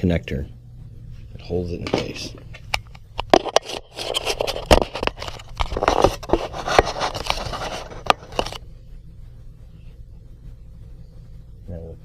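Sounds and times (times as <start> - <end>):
plastic scraping: 3.2 - 8.6.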